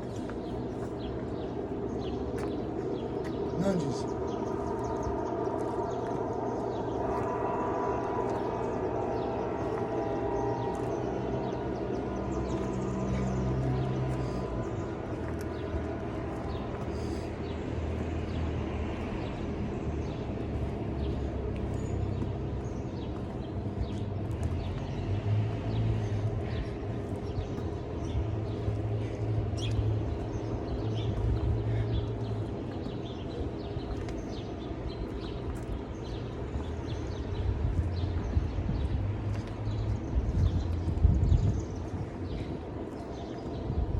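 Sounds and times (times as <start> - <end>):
distant traffic rumble: 0.0 - 43.9
small birds chirping: 0.0 - 43.9.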